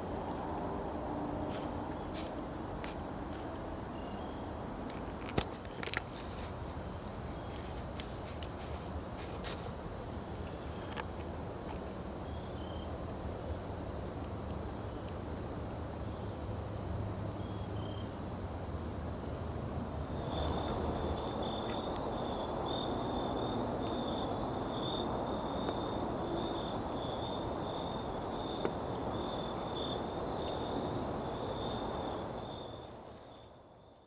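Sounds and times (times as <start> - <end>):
night insects trilling: 20.1 - 34.0.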